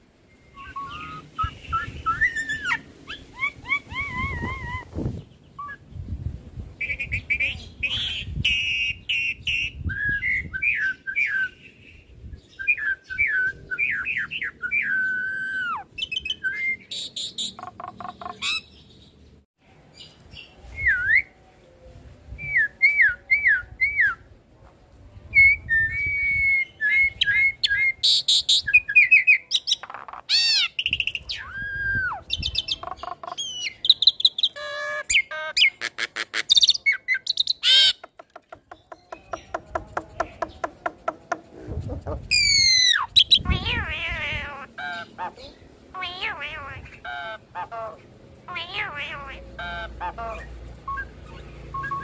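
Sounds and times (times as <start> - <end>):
bird whistling song: 0.3 - 5.9, 8.3 - 18.8, 42.3 - 43.6, 50.3 - 52.0
harsh bird chattering calls: 16.9 - 18.7, 32.4 - 50.5.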